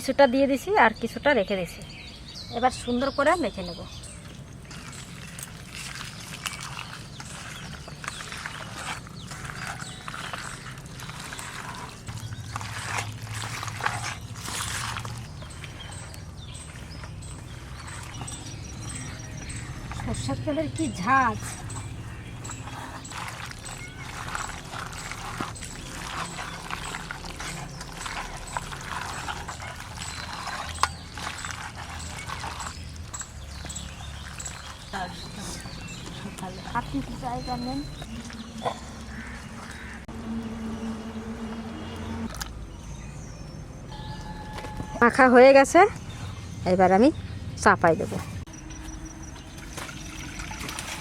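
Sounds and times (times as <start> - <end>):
hands squishing wet meat: 3.5 - 40.1.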